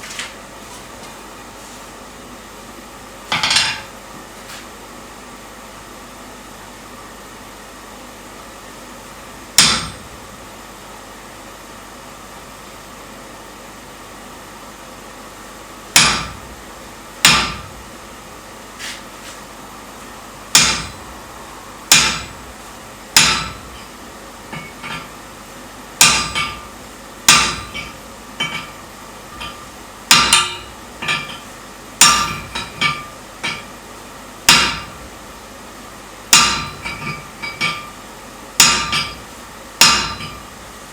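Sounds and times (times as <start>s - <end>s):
hammer striking steel on anvil: 3.3s - 3.9s, 9.6s - 10.2s, 16.0s - 16.6s, 17.2s - 17.8s, 20.5s - 21.2s, 21.9s - 22.5s, 23.2s - 25.2s, 26.0s - 33.8s, 34.5s - 35.2s, 36.3s - 38.0s, 38.6s - 40.6s.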